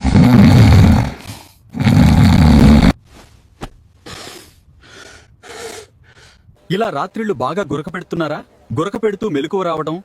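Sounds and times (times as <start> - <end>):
person snoring heavily: 0.0 - 3.0
faint breath: 4.1 - 6.6.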